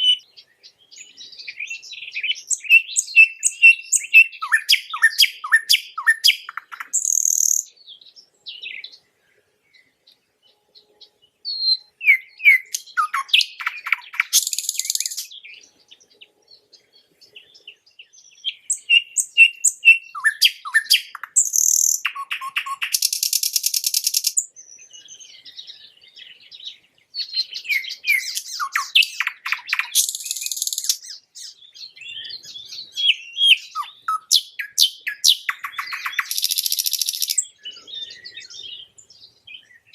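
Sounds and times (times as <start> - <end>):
nightingale singing: 0.0 - 39.9.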